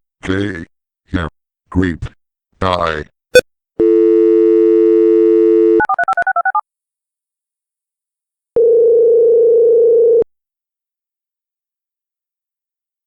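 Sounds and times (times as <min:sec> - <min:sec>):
telephone dial tone: 0:03.8 - 0:06.6, 0:08.6 - 0:10.3
telephone ringing tone: 0:03.8 - 0:06.6, 0:08.6 - 0:10.3.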